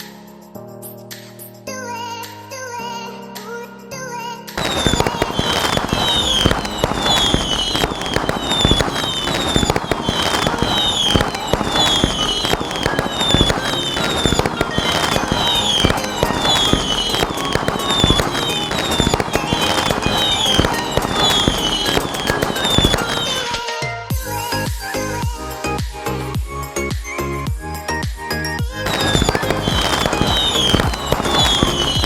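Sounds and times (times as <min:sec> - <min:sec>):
firecrackers cracking and popping: 0:04.6 - 0:23.7, 0:28.8 - 0:32.0
high falling whistle: 0:04.6 - 0:23.7, 0:28.9 - 0:32.0.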